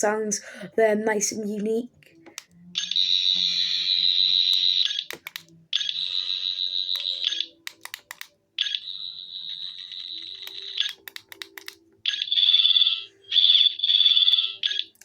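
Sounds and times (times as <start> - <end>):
toy buzzing warbling tones: 2.8 - 5.1, 5.8 - 7.6, 8.6 - 11.0
short mechanical clicks: 4.9 - 5.9.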